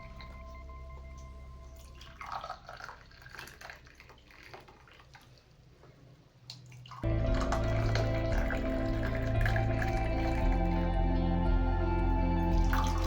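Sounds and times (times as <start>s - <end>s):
faint background music: 0.0s - 3.0s, 7.0s - 13.0s
liquid pouring through strainer: 2.0s - 5.5s.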